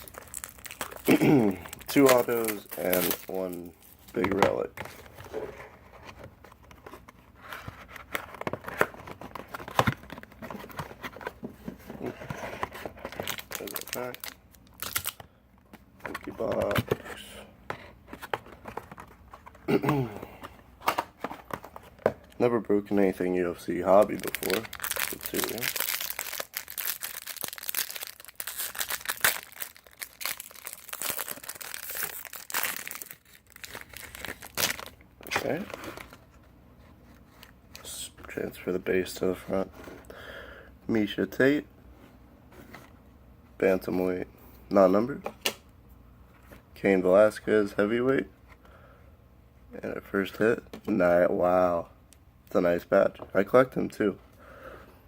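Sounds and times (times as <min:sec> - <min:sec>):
wrapper crinkling and tearing: 0:00.0 - 0:04.3, 0:13.0 - 0:15.2, 0:23.8 - 0:36.2
paper and cardboard rustling: 0:01.8 - 0:14.1.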